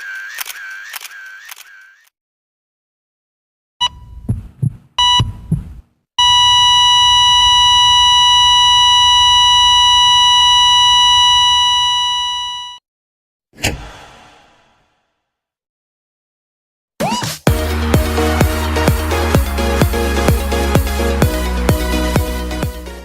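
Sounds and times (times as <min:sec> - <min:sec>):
heart monitor beeps: 0:03.8 - 0:12.8
low heartbeat thumps: 0:04.1 - 0:05.9
flatline tone: 0:06.2 - 0:12.8.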